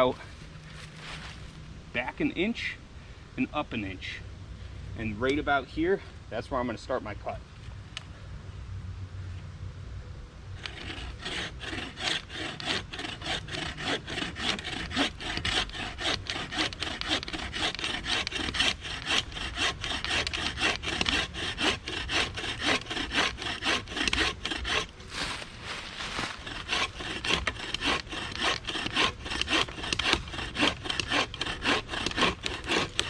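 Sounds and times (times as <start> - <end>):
bow saw cutting wood: 10.6 - 33.0.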